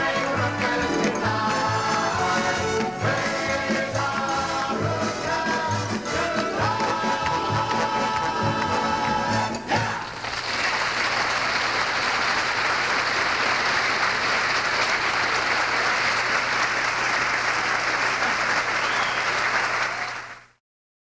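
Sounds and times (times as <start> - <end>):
audience applauding: 10.0 - 20.6.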